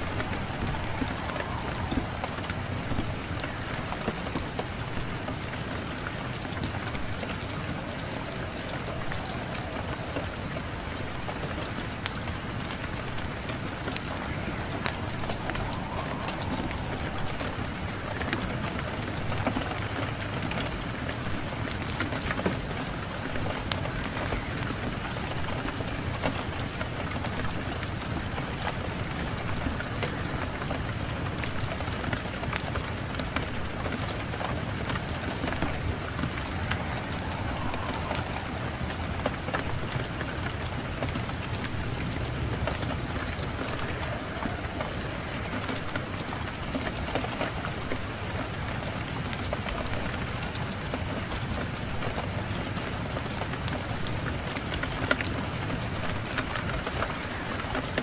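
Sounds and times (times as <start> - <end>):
wood fire crackling and popping: 0.0 - 19.9, 31.4 - 48.2
wind rushing: 0.0 - 20.4, 33.6 - 45.5.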